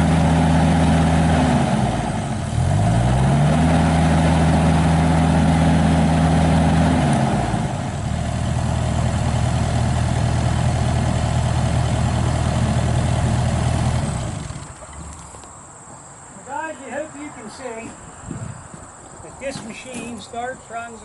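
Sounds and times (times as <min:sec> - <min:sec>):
excavator diesel engine running: 0:00.0 - 0:15.4.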